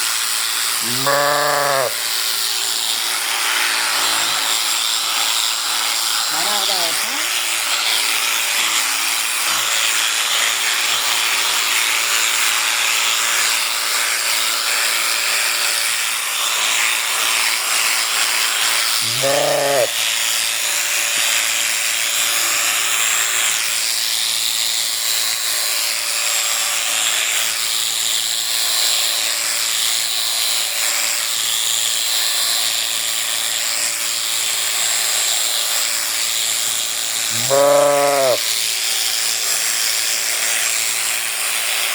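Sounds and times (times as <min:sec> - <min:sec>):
electric sheep shears running: 0:00.0 - 0:41.9
sheep bleating: 0:00.8 - 0:02.1, 0:19.0 - 0:20.0, 0:37.3 - 0:38.5.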